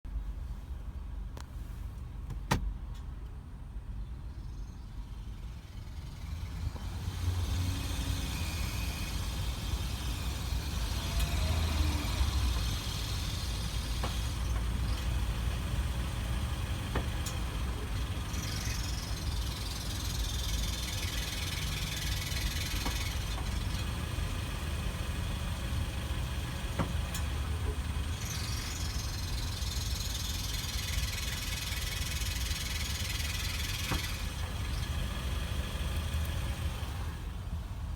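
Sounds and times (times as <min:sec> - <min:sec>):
car interior engine and road rumble: 0:00.1 - 0:37.9.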